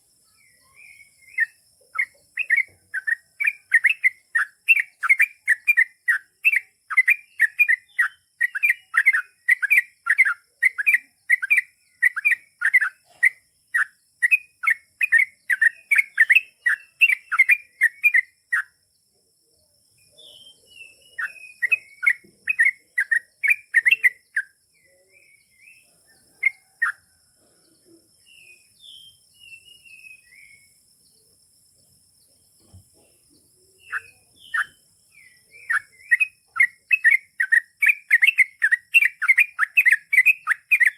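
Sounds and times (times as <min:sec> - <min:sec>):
bird chirps: 0:00.0 - 0:40.9
bulbul singing rapid repeated notes: 0:01.1 - 0:18.9, 0:20.9 - 0:24.7, 0:33.6 - 0:40.9.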